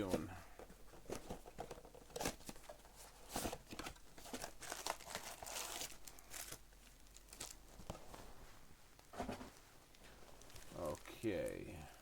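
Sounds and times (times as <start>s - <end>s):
card packs crinkling and tearing: 1.6s - 8.0s, 10.4s - 12.0s.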